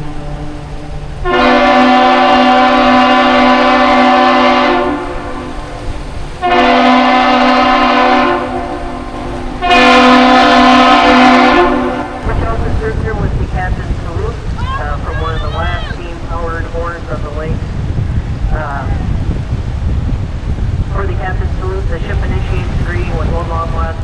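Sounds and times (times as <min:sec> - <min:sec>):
steam whistle blasts: 0:00.0 - 0:05.6, 0:06.4 - 0:12.2.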